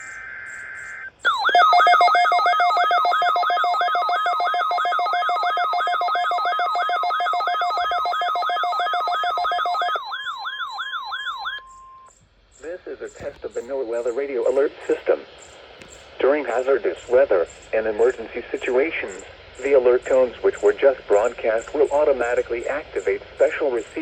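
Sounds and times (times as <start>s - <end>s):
digital data burst: 0.0s - 10.4s, 12.6s - 24.0s
beeps with falling sweep: 0.1s - 12.1s
steady alert tones: 1.3s - 12.1s.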